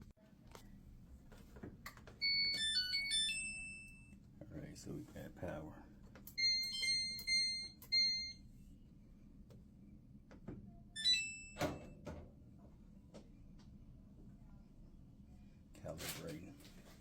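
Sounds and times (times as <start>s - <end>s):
control panel beeps: 6.3s - 8.4s.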